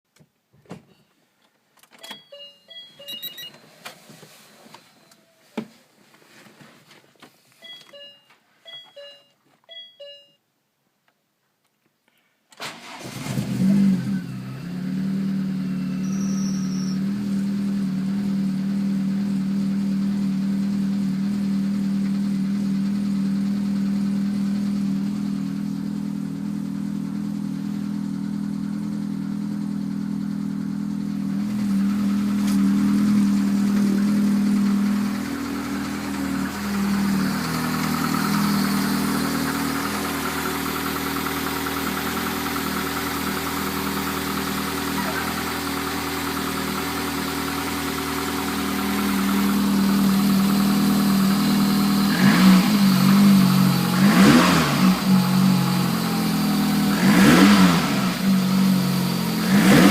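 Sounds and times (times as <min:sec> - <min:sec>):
clicks and short beeps: 0:01.8 - 0:03.6, 0:07.6 - 0:10.4
car engine starting and idling: 0:12.6 - 0:59.9
engine knocking: 0:33.0 - 0:51.4.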